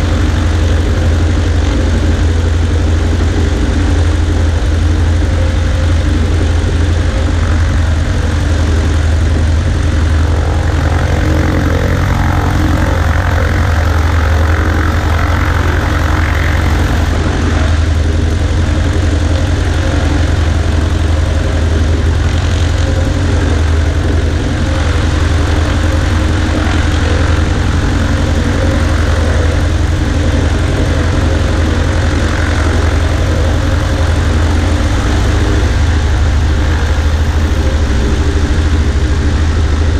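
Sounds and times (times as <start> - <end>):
light aircraft engine droning: 0.0 - 39.9.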